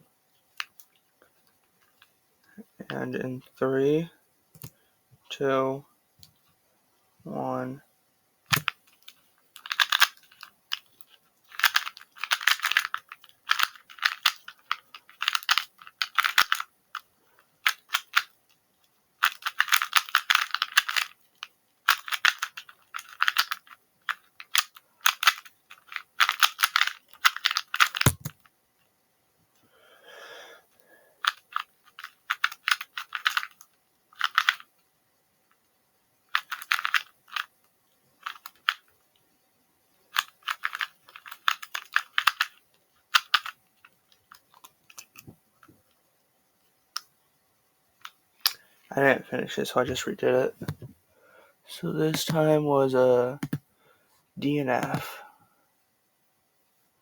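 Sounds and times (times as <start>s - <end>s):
puzzle cube clicking: 8.5s - 17.1s, 17.7s - 18.4s, 19.2s - 28.5s, 31.2s - 34.7s, 36.3s - 37.5s, 38.2s - 38.8s, 40.1s - 43.6s, 53.4s - 53.6s, 54.8s - 55.1s.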